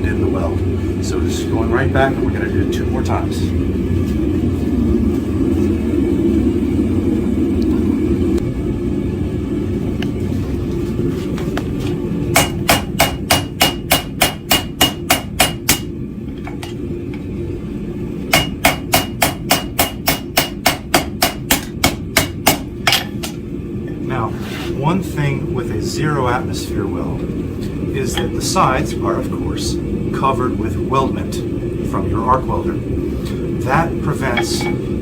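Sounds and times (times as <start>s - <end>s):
hammer striking metal on anvil: 12.3s - 16.8s, 18.3s - 23.3s, 34.3s - 34.8s.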